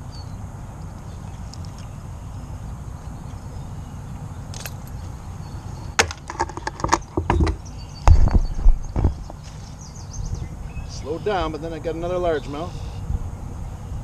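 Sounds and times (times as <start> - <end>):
steady low rumble: 7.5 - 14.0.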